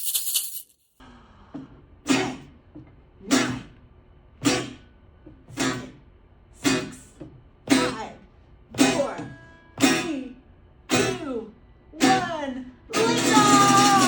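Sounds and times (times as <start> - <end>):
guitar strummed slowly: 3.3 - 3.8, 4.4 - 6.0, 6.6 - 7.1, 7.7 - 8.0, 8.7 - 10.3, 10.9 - 11.3, 12.0 - 14.0.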